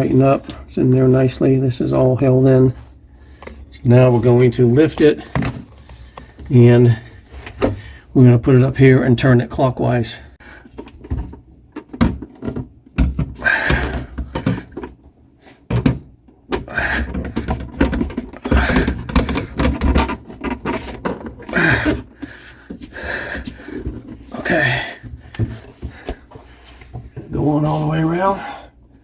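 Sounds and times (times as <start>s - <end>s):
garbage disposal knocking and scraping: 4.2s - 6.4s, 10.7s - 27.4s.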